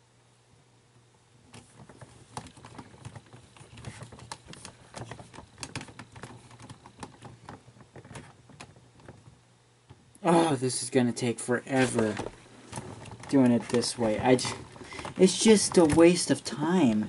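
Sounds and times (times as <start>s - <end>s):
plastic parts clicking and tapping: 1.5s - 10.2s, 11.8s - 17.0s.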